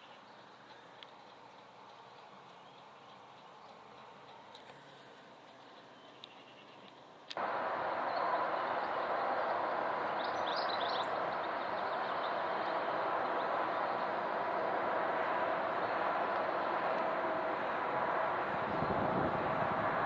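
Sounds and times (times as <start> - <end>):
bird chirping: 1.5 - 4.1, 5.6 - 7.0, 8.1 - 14.2
jet airliner engines roaring: 7.3 - 20.0.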